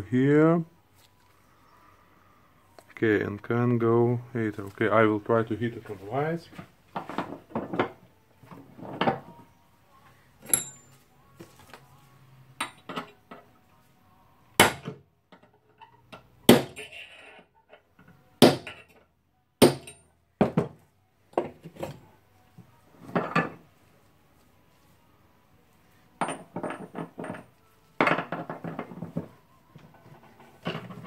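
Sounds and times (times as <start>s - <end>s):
metal parts knocking on workbench: 7.0s - 8.0s, 26.2s - 29.3s.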